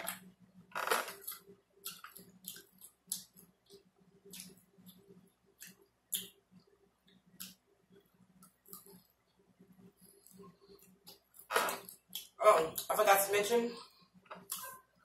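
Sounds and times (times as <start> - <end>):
wet lip smacking and chewing: 1.2 - 9.4, 10.1 - 12.9.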